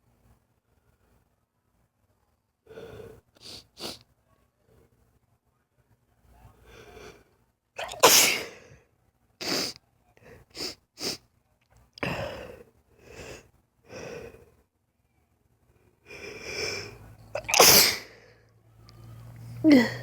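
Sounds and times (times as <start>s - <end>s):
woman sneezing: 7.8s - 8.6s, 17.4s - 18.1s
gasping breaths: 19.4s - 20.0s.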